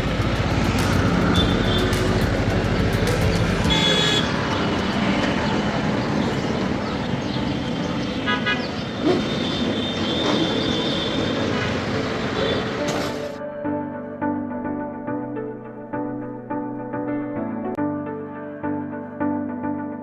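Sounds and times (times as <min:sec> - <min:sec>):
city road traffic: 0:00.0 - 0:13.4
vehicle horn toot: 0:03.7 - 0:04.4, 0:08.2 - 0:11.7.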